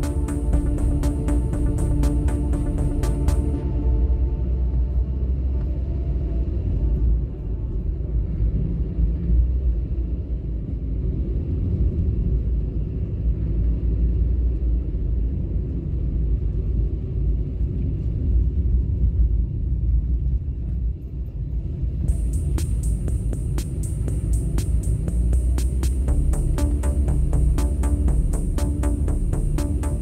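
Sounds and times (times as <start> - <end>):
car road and engine rumble: 0.0 - 17.4, 21.5 - 30.0.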